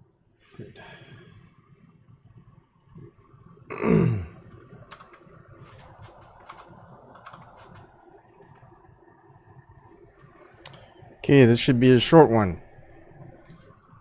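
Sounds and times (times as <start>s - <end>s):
keyboard clicks: 4.9s - 5.2s, 6.0s - 8.6s.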